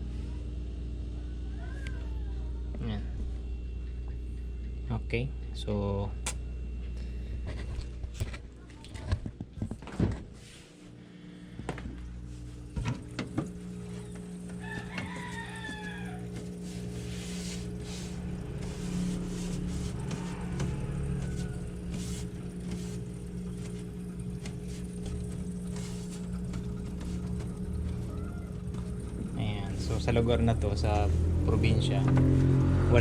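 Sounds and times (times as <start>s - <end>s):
refrigerator compressor hum: 0.0s - 33.0s
rooster crowing: 14.5s - 22.9s, 27.8s - 30.6s.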